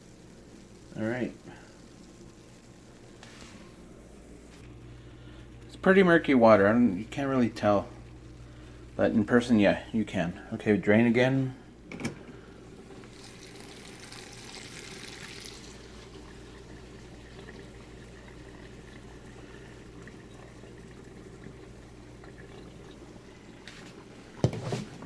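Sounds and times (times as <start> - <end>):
water pouring into a bucket: 12.9 - 24.4.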